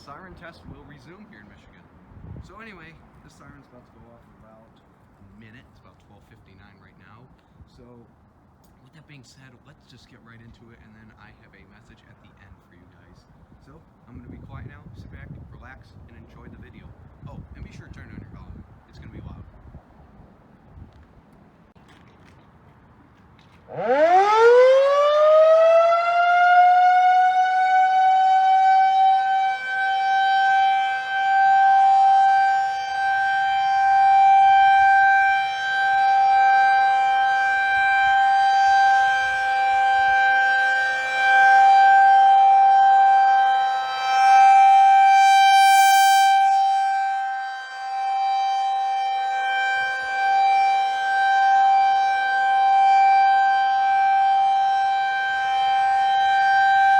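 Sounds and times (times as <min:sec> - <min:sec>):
tornado warning siren: 0:00.0 - 0:07.1, 0:22.9 - 0:56.9.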